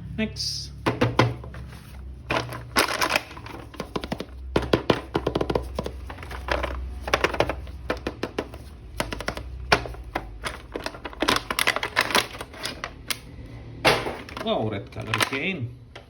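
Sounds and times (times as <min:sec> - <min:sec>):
plastic clicks and taps: 0:03.7 - 0:12.1.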